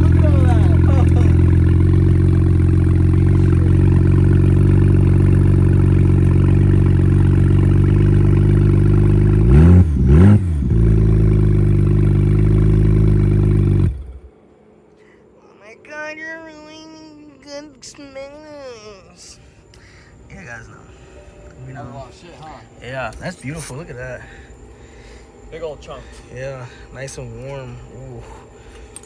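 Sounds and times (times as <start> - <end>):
engine revving blips: 0.0 - 14.3
car engine idling: 0.0 - 15.0.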